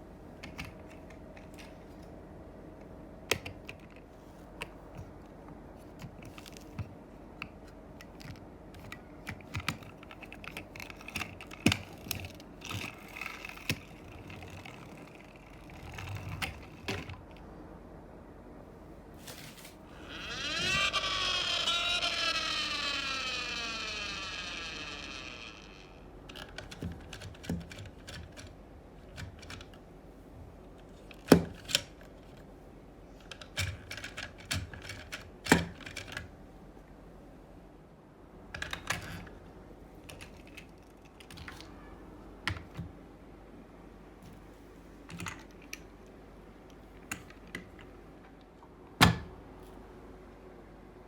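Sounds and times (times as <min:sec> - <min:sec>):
plastic toys clicking and knocking: 0:08.0 - 0:17.3, 0:20.0 - 0:29.8, 0:33.2 - 0:36.3, 0:40.0 - 0:41.7.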